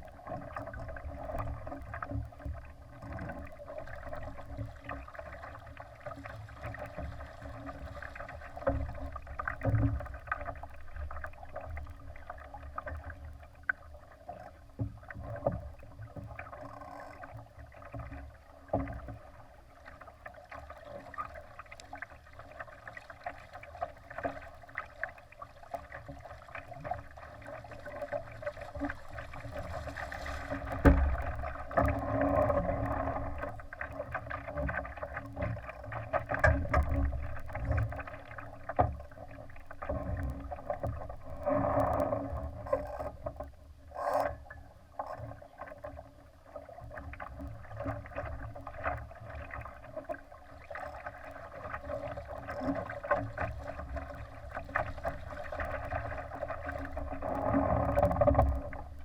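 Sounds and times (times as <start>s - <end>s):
water slapping against hull: 0.0s - 59.0s
splashes or knocks: 28.7s - 33.5s.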